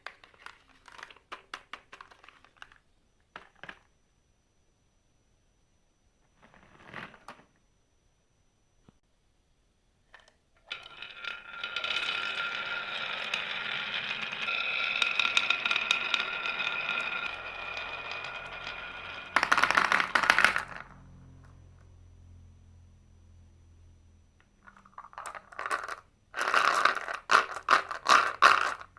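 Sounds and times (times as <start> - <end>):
marbles rattling down a marble run: 0.3 - 1.3, 10.6 - 21.0, 24.6 - 28.9.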